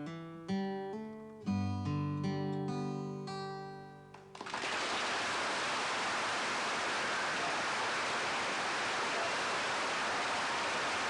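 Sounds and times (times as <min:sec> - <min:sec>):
audience applauding: 0:04.3 - 0:11.0.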